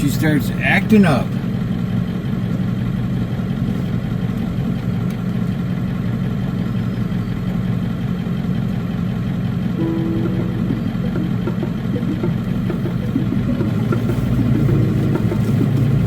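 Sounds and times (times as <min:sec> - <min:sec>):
diesel van engine droning: 0:00.0 - 0:16.0
short tone: 0:09.8 - 0:12.4.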